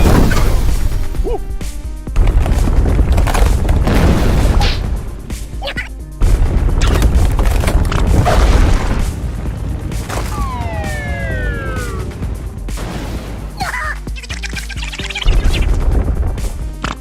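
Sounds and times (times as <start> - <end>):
booms and crashing impacts: 0.0 - 13.6, 15.2 - 16.8
heavy rumble: 0.0 - 13.6
cartoon music: 5.4 - 6.0, 10.2 - 12.5, 13.6 - 15.8.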